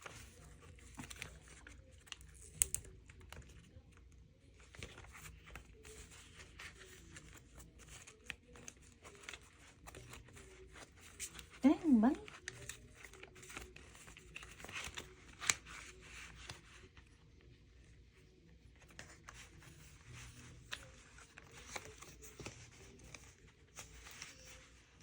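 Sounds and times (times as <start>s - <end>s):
paper cash rustling: 4.6s - 17.0s, 18.8s - 25.0s.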